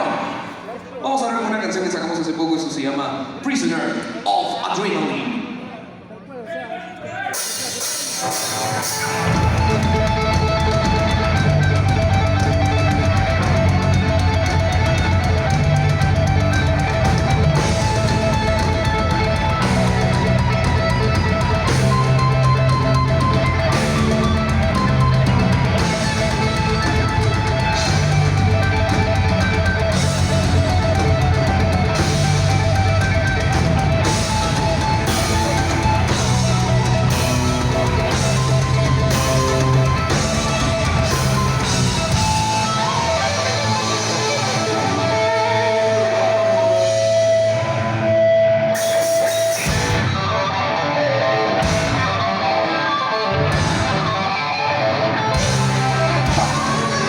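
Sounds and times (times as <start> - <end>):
heavy metal band playing live: 7.3 - 57.0
fast drumming: 7.4 - 47.4, 55.4 - 57.0
distorted electric guitars: 7.4 - 57.0
bass guitar: 7.8 - 57.0.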